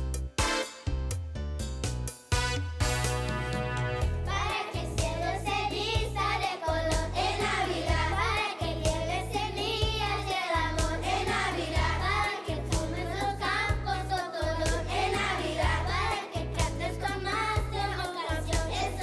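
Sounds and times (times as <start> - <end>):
instrumental accompaniment: 0.0 - 9.2
steady bass line: 0.0 - 19.0
children's choir singing: 4.2 - 19.0.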